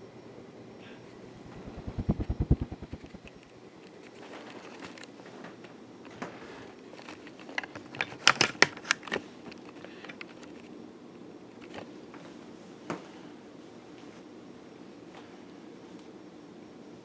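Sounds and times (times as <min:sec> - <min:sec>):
ceiling fan hum: 0:00.0 - 0:04.5.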